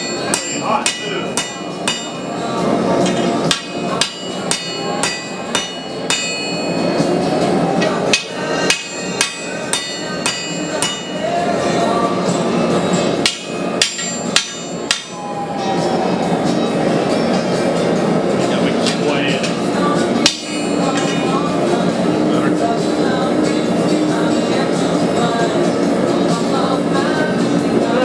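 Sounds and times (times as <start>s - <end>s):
hammer striking steel on anvil: 0.0s - 2.3s, 3.0s - 7.1s, 7.8s - 11.4s, 13.1s - 15.3s, 20.2s - 21.3s.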